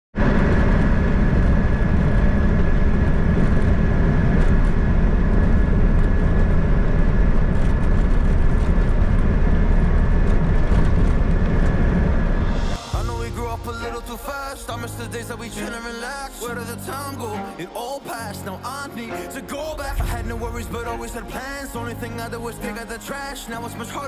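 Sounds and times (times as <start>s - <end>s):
vehicle rumbling: 0.2s - 17.4s.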